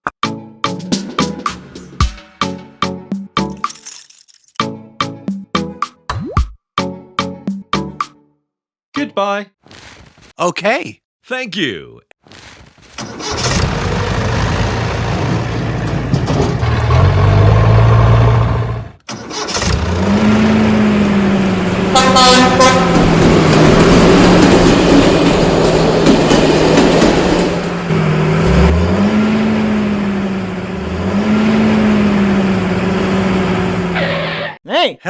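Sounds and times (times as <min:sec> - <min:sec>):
vehicle engine revving: 0:13.0 - 0:26.3, 0:27.0 - 0:34.5
horn toot: 0:21.8 - 0:23.1.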